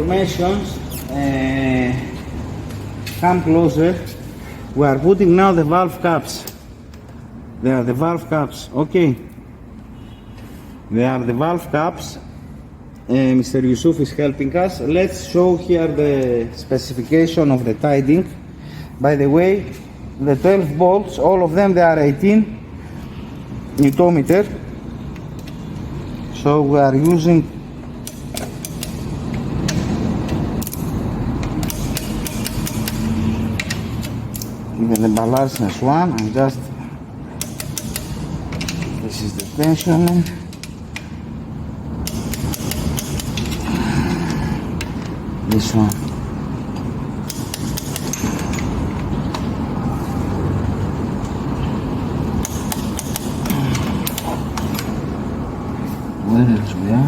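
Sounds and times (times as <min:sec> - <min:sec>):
metallic clicks of tools: 0:23.7 - 0:24.5, 0:27.9 - 0:36.4, 0:37.3 - 0:41.2, 0:42.0 - 0:49.5, 0:52.4 - 0:55.1.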